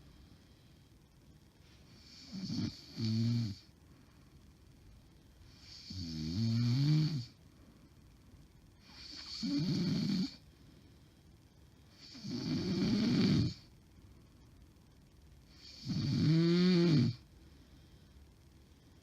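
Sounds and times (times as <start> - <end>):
woman snoring heavily: 2.0 - 3.6, 5.6 - 7.3, 8.9 - 10.4, 12.0 - 13.6, 15.6 - 17.2.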